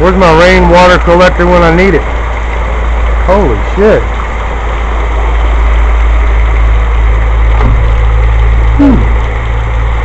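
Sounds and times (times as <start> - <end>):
heavy rain pouring: 0.0 - 10.0
low rumble: 4.2 - 10.0.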